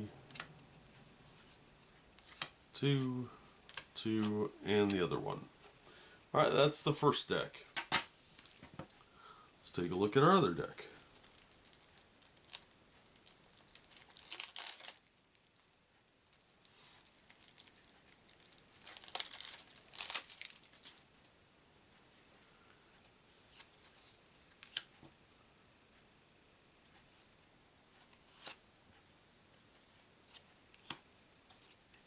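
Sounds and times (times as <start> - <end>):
plastic wrapping tearing and crinkling: 8.4 - 8.7, 11.0 - 15.7, 16.3 - 21.0.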